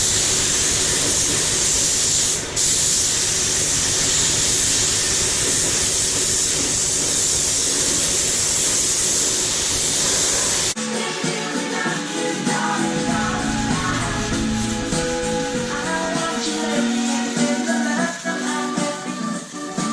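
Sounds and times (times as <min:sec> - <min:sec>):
spray tool hissing: 0:00.0 - 0:10.8, 0:11.7 - 0:19.0
rock music: 0:12.8 - 0:16.9
low rumble: 0:13.0 - 0:16.2.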